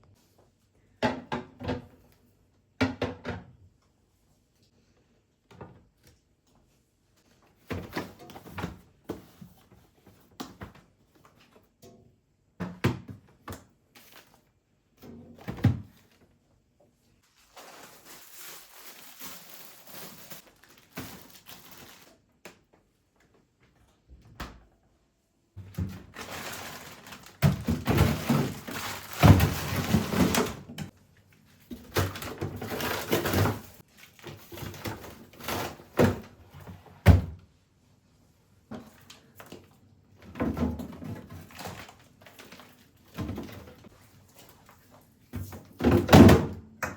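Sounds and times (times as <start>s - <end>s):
rustling: 17.2s - 22.1s, 26.0s - 30.4s
objects thunking and knocking: 25.6s - 30.9s.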